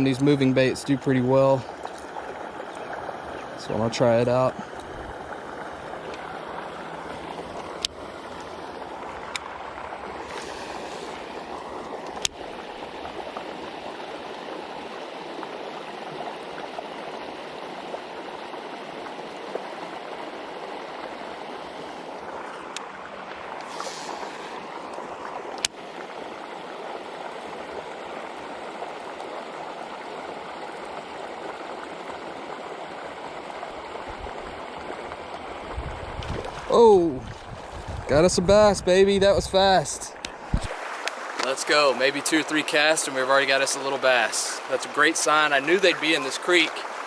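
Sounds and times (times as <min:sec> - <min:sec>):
flowing creek water: 0:00.0 - 0:47.0.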